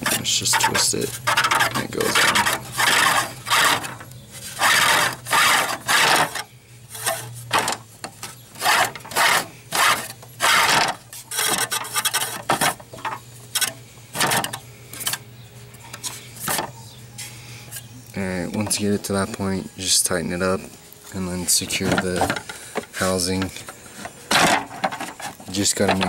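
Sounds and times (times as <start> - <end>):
plastic scraping and rubbing: 0.0 - 15.2, 21.5 - 26.0.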